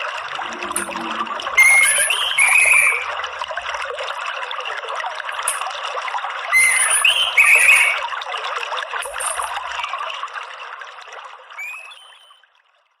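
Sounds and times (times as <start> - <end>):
stream water trickling: 0.0 - 13.0
bird chirps and whistles: 1.6 - 3.1, 6.5 - 8.0, 11.6 - 12.4.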